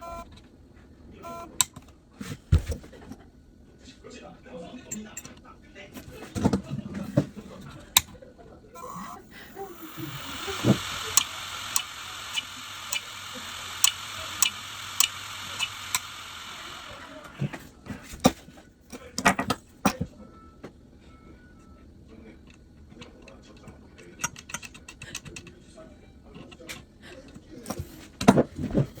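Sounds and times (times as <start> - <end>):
hard drive heads clicking: 8.8 - 17.4
hard disk drive hiss: 8.8 - 17.6.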